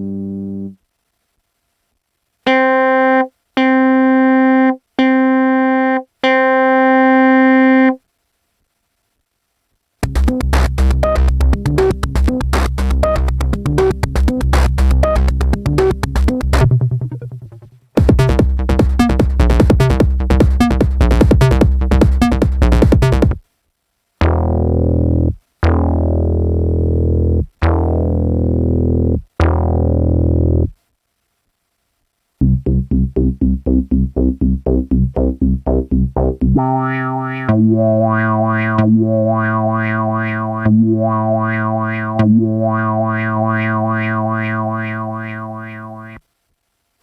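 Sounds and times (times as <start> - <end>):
synthesizer fast repeating notes: 10.0 - 23.4, 32.4 - 46.2
synthesizer low bass notes: 10.0 - 23.4, 24.2 - 30.7, 32.4 - 46.2.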